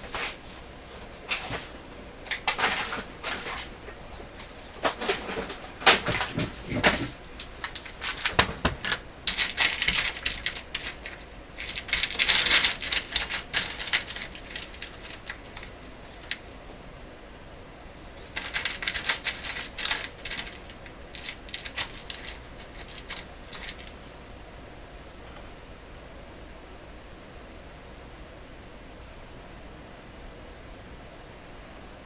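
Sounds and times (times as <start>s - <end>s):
washers clinking and rustling: 1.0s - 16.4s, 18.2s - 24.0s
small parts clicking and tapping: 4.8s - 16.4s, 18.2s - 24.0s.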